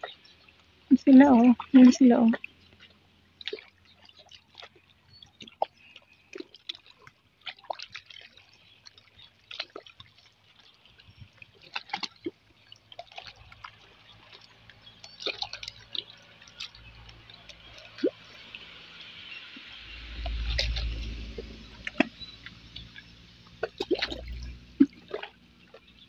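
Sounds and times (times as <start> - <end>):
water dripping and gurgling: 0.0 - 26.0
water lapping among rocks: 0.0 - 26.0.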